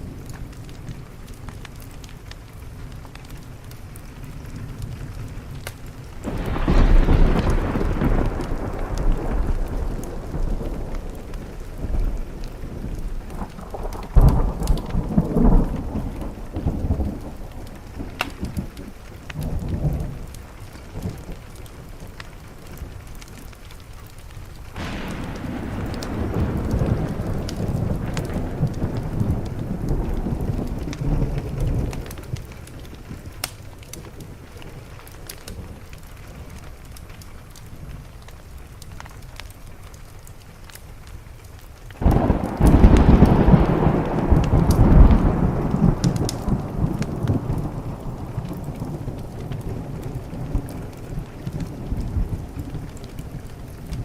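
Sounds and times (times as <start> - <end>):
thunder rumbling: 0.0 - 23.9, 24.5 - 38.6, 42.0 - 54.0
rain on a window: 0.0 - 54.0
thunder clap: 4.4 - 22.7, 24.7 - 34.9, 42.0 - 54.0.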